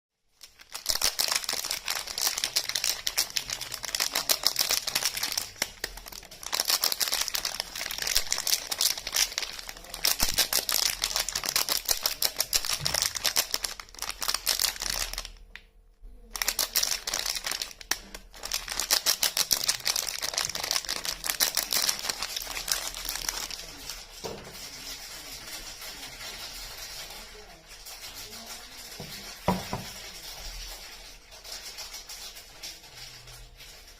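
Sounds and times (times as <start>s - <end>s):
packaging crinkling: 0.3s - 15.6s, 16.3s - 33.9s.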